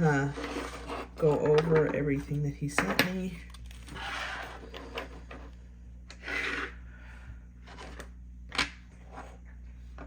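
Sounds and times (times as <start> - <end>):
small objects scraping a surface: 0.0 - 1.3, 6.1 - 6.8.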